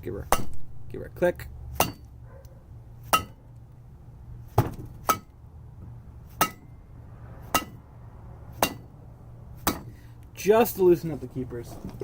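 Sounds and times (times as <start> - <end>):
rubber mallet tapping metal: 7.5 - 7.8.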